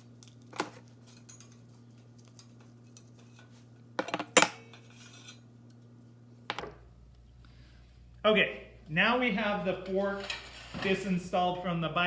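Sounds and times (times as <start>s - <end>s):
metal bicycle parts clinking: 0.0s - 5.5s
steady low hum: 0.0s - 12.0s.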